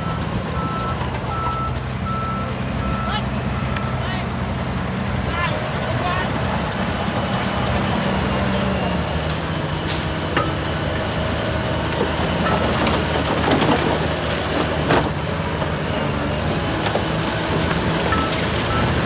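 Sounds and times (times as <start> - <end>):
diesel engine running: 0.0 - 19.0
knocks and clanks: 11.7 - 15.9.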